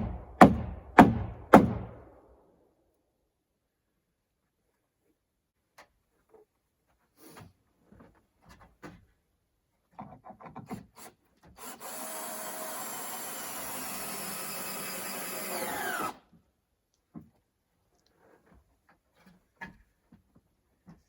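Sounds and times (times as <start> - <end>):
power saw cutting wood: 11.6 - 16.2.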